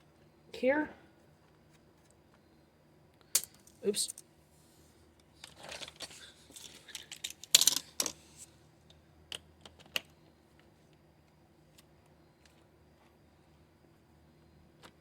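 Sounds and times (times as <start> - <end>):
metal parts and tools rattling: 5.4 - 8.2.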